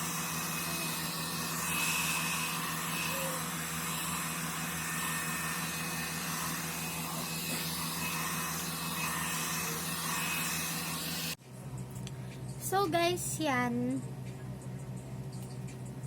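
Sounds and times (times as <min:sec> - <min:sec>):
hot-air brush blowing: 0:00.0 - 0:11.4.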